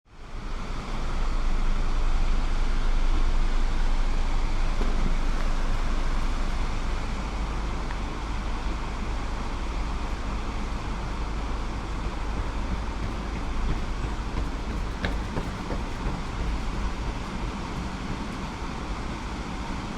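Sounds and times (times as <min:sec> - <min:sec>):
distant traffic rumble: 0:04.6 - 0:19.9.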